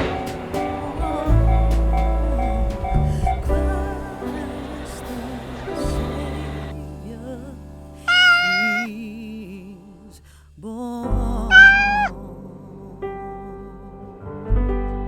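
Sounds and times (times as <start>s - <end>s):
soft background music: 0.0s - 9.8s
cat meowing: 8.1s - 8.9s, 11.5s - 12.1s.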